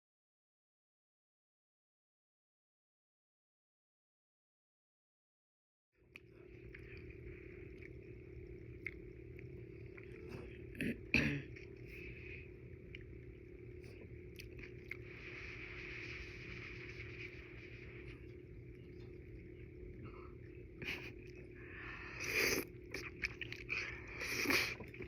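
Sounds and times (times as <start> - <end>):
chewing noodles: 6.0 - 10.9, 11.5 - 15.1, 21.0 - 25.0
steady low hum: 6.0 - 25.0.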